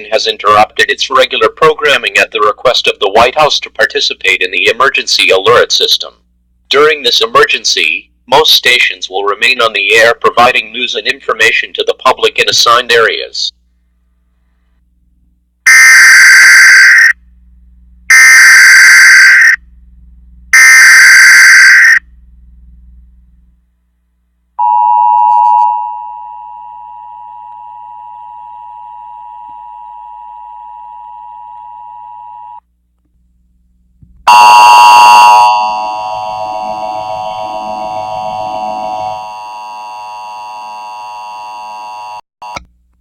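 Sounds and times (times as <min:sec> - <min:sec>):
two-tone attention signal: 0:34.3 - 0:39.3
electronic chord: 0:34.3 - 0:40.8.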